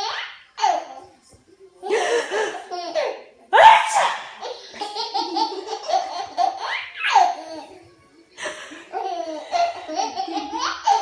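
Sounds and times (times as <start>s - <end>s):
baby laughing: 0.0s - 1.0s, 1.8s - 3.3s, 4.0s - 7.8s, 8.8s - 11.0s.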